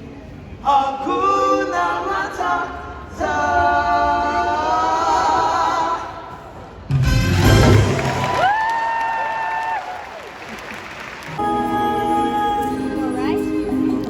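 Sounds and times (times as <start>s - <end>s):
voices singing unaccompanied: 0.6s - 6.4s.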